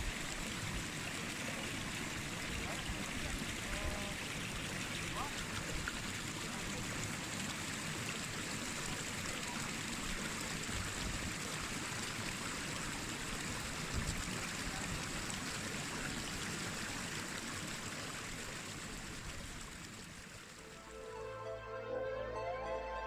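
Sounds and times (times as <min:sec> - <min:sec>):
flowing mountain water: 0:00.0 - 0:21.4.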